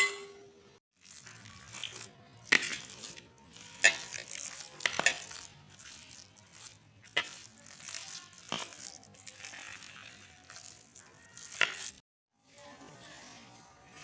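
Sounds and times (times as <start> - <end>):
utensil scraping: 1.0 - 12.0.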